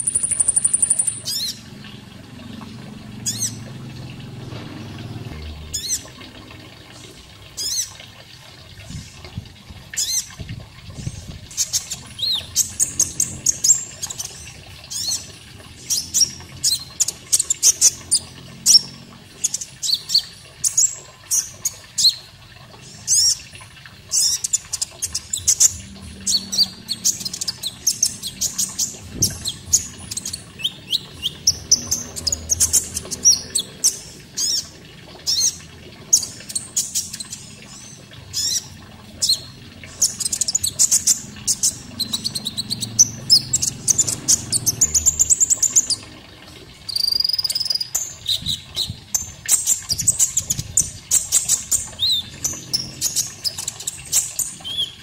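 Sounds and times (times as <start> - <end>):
bird singing high chirps and trills: 0.0 - 1.7, 24.1 - 34.7, 46.9 - 55.0
faint running water: 0.0 - 55.0.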